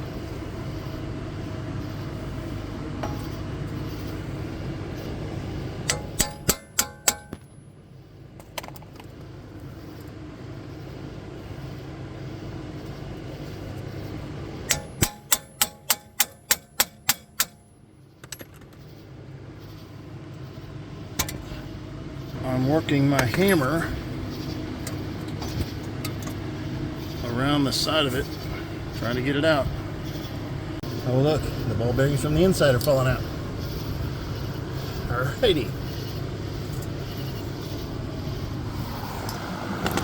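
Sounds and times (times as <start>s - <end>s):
steady low hum: 0.0s - 40.0s
hammer striking metal: 3.0s - 3.4s, 5.9s - 7.5s, 14.7s - 17.7s.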